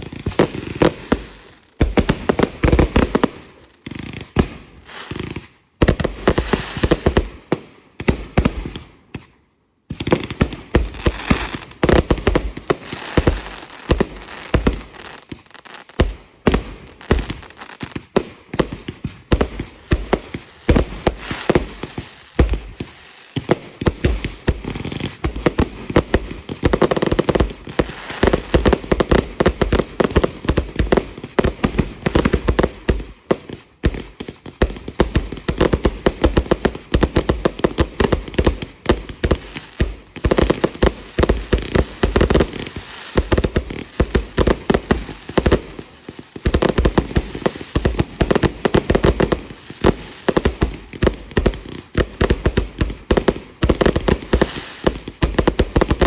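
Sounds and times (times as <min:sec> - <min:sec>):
fireworks bangs and crackles: 0:00.0 - 0:56.0.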